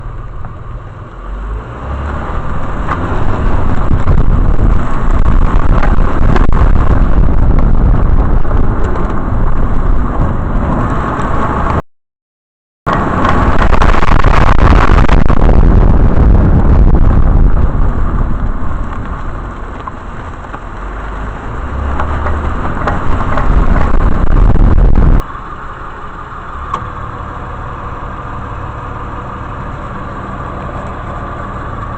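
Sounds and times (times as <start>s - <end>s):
engine and driveline noise: 0.0s - 11.8s, 12.9s - 31.9s
engine idling hum: 12.9s - 31.9s.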